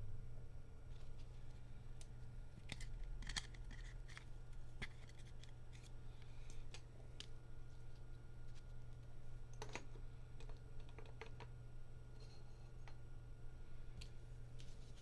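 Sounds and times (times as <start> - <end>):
low steady hum: 0.0 - 15.0
cards clicking and scraping: 2.6 - 7.3.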